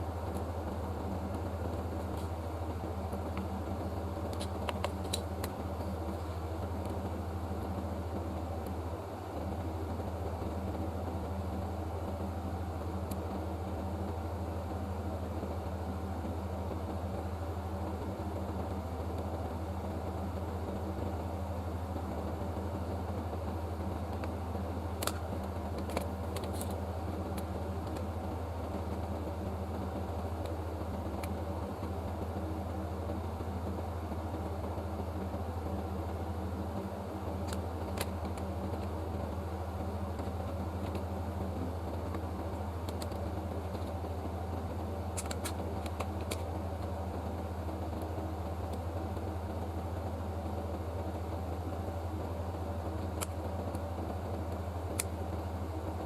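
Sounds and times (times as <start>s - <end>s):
low mechanical hum: 0.0s - 56.0s.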